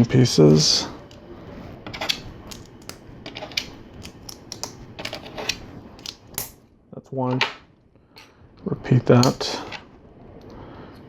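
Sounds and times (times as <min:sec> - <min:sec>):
plastic pieces clicking: 0:01.9 - 0:06.6.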